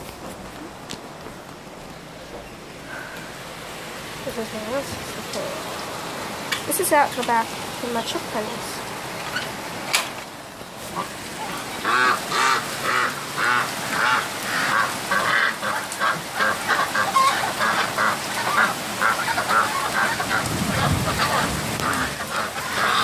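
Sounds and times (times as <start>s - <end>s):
rain falling: 0.0s - 23.0s
ducks quacking: 10.8s - 23.0s.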